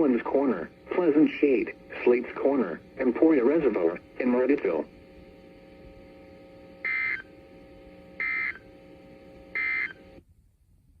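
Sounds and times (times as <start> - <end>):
faint steady hum: 0.0 - 11.0
shrill digital data tones: 6.8 - 7.3, 8.2 - 8.6, 9.6 - 10.0.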